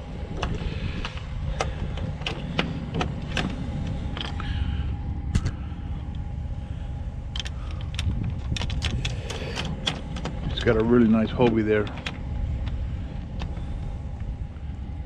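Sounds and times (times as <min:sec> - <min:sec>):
car engine rumble: 0:00.0 - 0:15.0
faint steady hum: 0:00.0 - 0:15.0
sharp clicks: 0:07.3 - 0:13.6.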